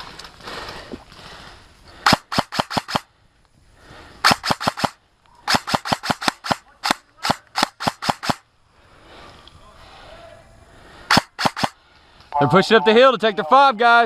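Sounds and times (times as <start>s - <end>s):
airsoft gun firing: 2.0s - 3.1s, 4.2s - 8.4s, 11.1s - 11.8s.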